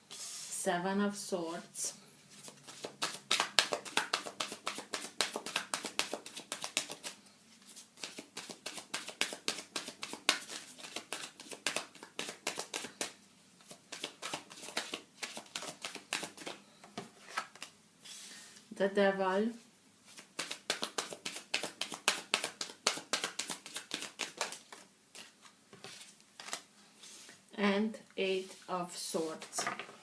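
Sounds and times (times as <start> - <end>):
cards being shuffled: 2.4 - 13.1, 13.7 - 16.6, 20.1 - 26.6.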